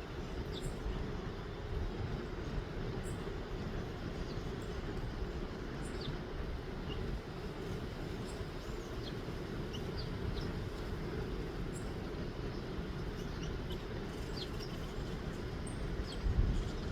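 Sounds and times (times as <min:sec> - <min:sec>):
small birds chirping: 0:00.4 - 0:01.3, 0:05.7 - 0:16.9.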